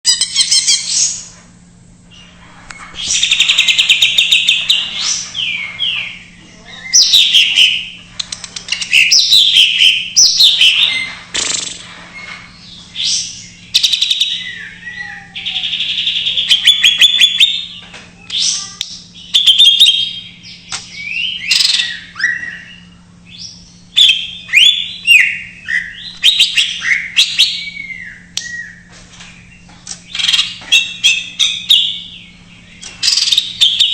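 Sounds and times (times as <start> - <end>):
bird singing varied song: 2.1 - 8.0, 8.7 - 11.2, 12.2 - 33.9.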